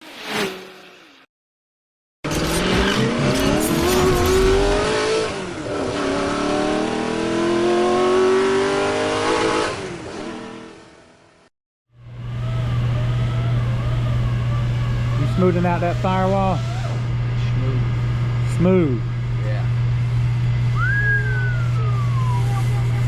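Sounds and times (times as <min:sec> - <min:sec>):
car engine accelerating: 0:02.3 - 0:11.1.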